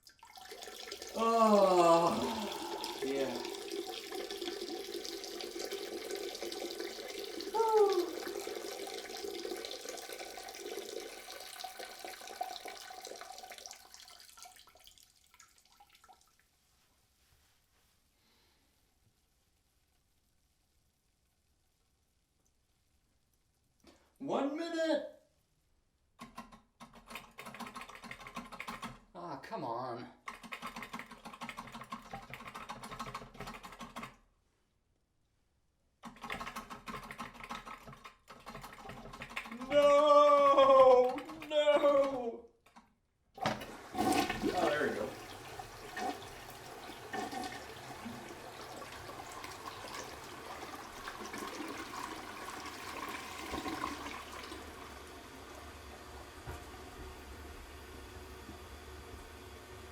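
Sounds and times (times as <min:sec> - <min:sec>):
urine splashing into toilet water: 0:00.0 - 0:16.7, 0:36.0 - 0:42.8, 0:43.4 - 0:59.4.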